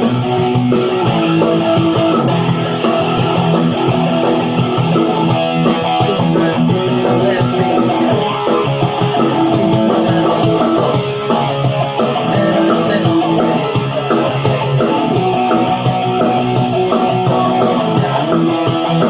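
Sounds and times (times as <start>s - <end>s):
electric guitar rock chords: 0.0s - 19.0s.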